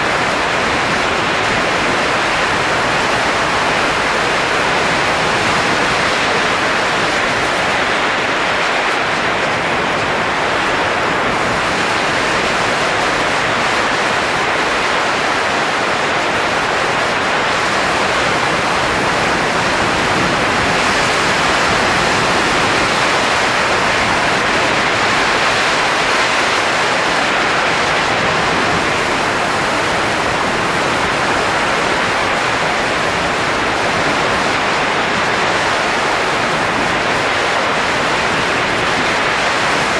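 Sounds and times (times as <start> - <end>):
blowing air rushing: 0.0 - 39.9.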